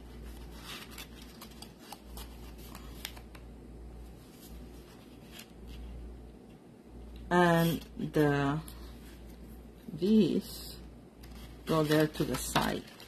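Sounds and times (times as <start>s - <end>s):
cardstock rustling and ticking: 0.0s - 3.5s, 11.2s - 13.0s
low steady hum: 0.0s - 13.0s.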